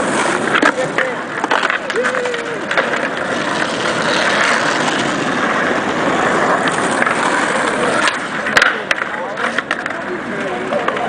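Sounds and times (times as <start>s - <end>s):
skateboard wheels rolling on pavement: 0.0s - 11.0s.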